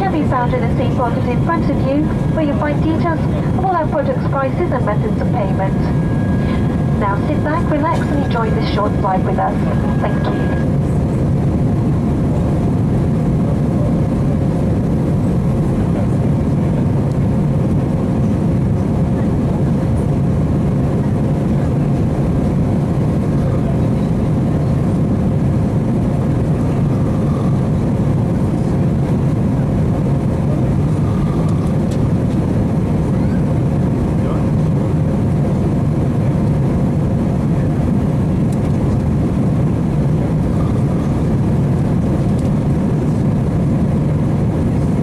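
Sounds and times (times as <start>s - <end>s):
faint steady hum: 0.0s - 11.1s
aircraft cabin engine rush: 0.0s - 45.0s.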